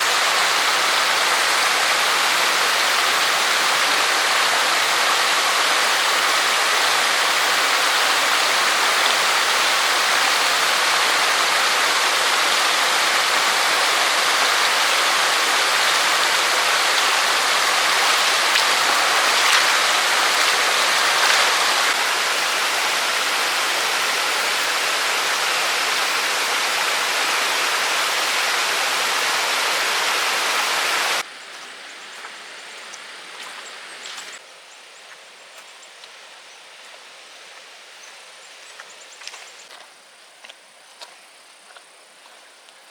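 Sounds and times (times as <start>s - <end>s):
steady rain falling: 0.0s - 40.8s.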